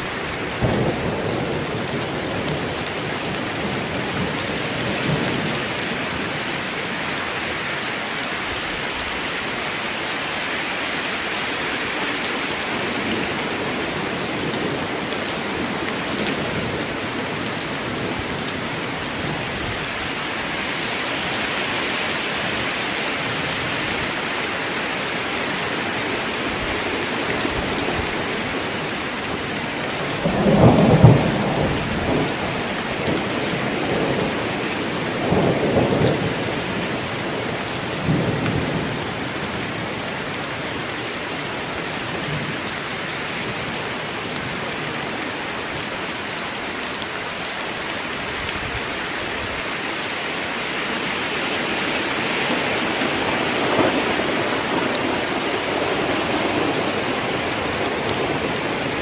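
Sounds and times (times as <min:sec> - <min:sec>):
steady rain: 0:00.0 - 0:59.0
thunder crack and rumble: 0:30.0 - 0:39.7.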